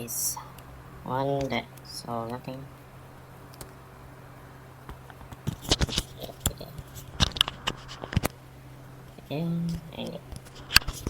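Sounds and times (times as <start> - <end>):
steady low hum: 0.0 - 11.0
light scraping of small objects: 5.1 - 8.4.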